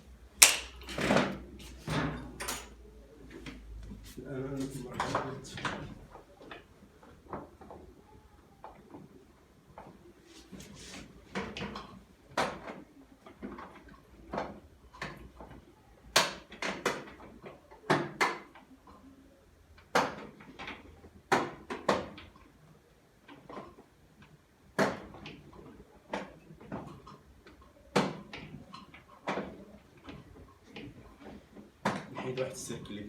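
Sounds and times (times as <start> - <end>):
tools clicking and knocking on metal: 0.4 - 2.8.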